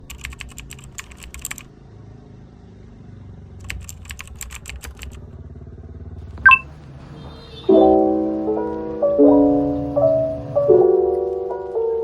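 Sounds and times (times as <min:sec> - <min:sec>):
keyboard key clicks: 0:06.4 - 0:06.6.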